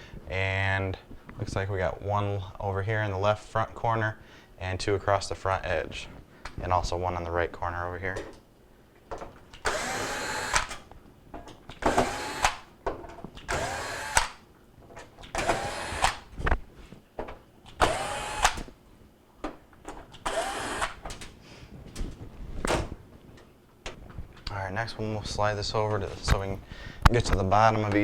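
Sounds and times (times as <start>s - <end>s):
cordless drill motor whine: 9.7s - 10.8s, 11.8s - 12.6s, 13.5s - 14.4s, 15.4s - 16.2s, 17.8s - 18.7s, 20.2s - 21.0s.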